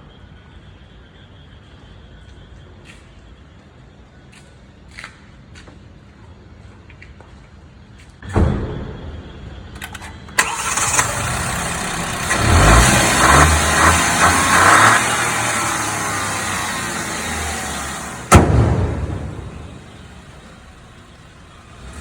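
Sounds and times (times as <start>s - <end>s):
car engine starting and idling: 9.7s - 22.0s
engine throttle blips: 9.8s - 22.0s.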